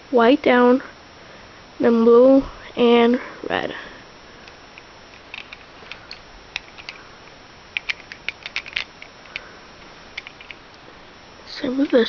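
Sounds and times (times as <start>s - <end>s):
plastic cube pieces clicking: 5.1s - 7.0s, 7.8s - 9.5s.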